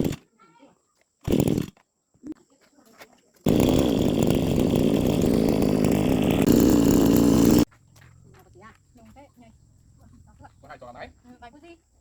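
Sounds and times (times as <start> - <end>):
lawn mower engine running: 0.0 - 0.2, 1.3 - 1.7, 3.5 - 7.7.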